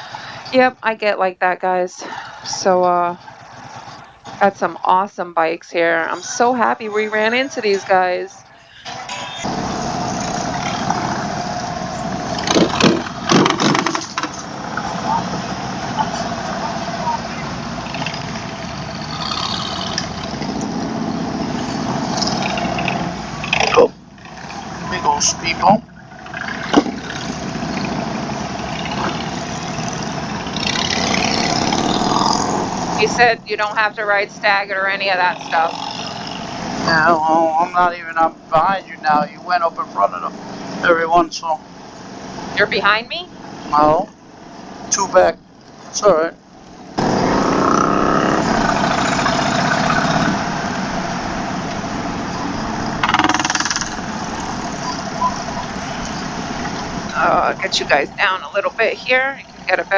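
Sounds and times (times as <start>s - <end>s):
bike going over speed bump: 9.5s - 16.6s, 25.8s - 33.3s
motorcycle engine running: 9.5s - 45.5s, 46.6s - 59.9s
buzzing rattle: 52.0s - 57.1s.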